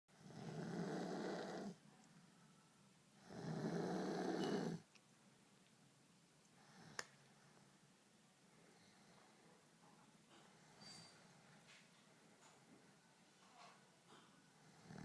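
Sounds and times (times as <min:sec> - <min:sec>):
person snoring: 0:00.2 - 0:01.8, 0:03.3 - 0:04.8.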